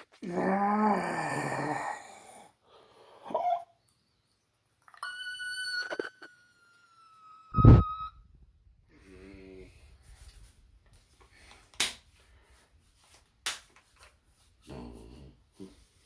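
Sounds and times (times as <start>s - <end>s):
man's high whistle-like voice: 6.8s - 8.2s
short low hum: 7.6s - 8.2s.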